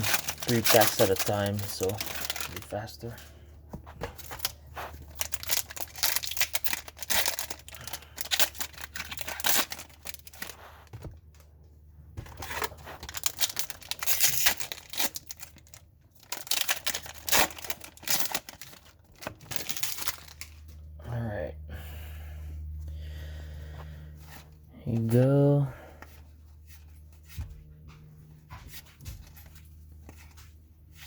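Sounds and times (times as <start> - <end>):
card pack wrappers tearing: 0.0 - 3.2, 4.2 - 10.7, 12.3 - 20.7.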